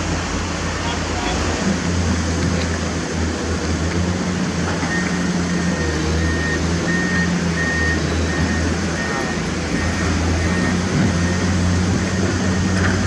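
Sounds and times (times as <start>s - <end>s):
diesel engine droning: 0.0s - 13.0s
reversing alarm beeping: 4.8s - 13.0s.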